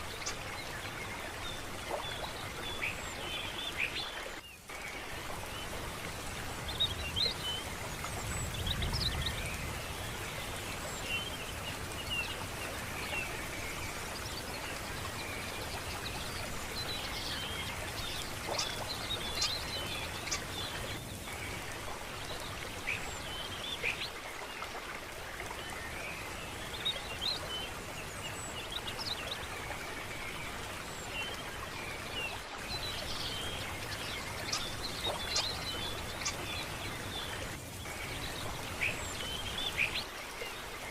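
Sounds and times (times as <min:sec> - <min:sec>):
rushing water: 0:00.0 - 0:40.9
birds chirping: 0:05.4 - 0:21.2, 0:30.1 - 0:40.1.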